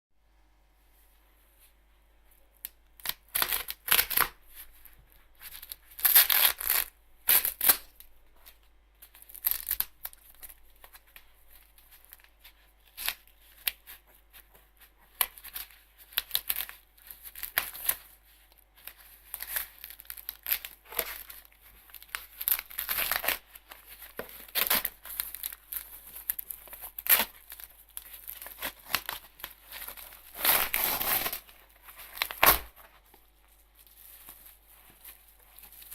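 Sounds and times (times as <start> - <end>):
packaging tearing and crinkling: 3.0 - 4.4, 5.5 - 8.0, 9.2 - 11.0, 15.2 - 18.2, 18.8 - 35.9.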